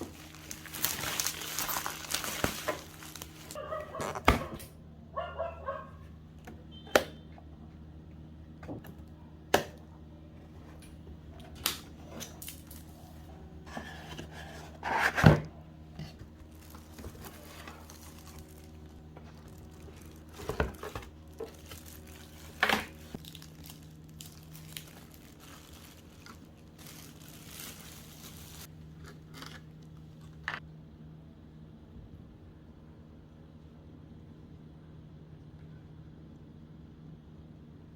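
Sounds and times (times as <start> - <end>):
packaging tearing and crinkling: 0.0 - 4.3, 16.5 - 28.7.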